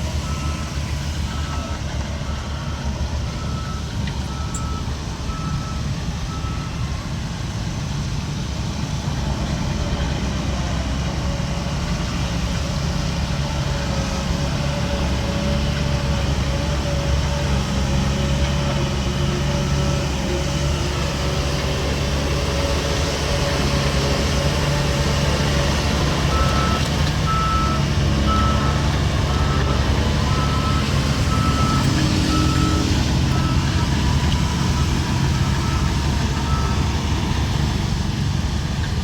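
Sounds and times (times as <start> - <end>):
diesel machinery running: 0.0 - 39.0
reversing alarm beeping: 0.2 - 6.8, 26.2 - 37.0.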